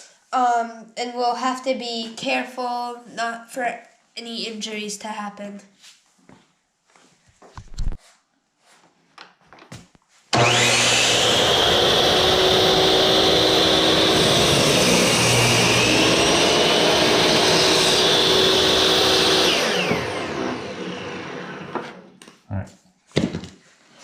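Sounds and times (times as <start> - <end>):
electric saw whining: 10.3 - 22.0
saw blade cutting wood: 10.3 - 22.0.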